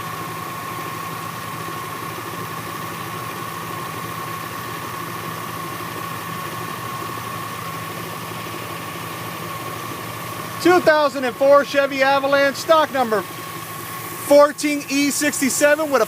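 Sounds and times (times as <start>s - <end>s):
car engine idling: 0.0s - 16.0s
high whine: 10.5s - 16.0s.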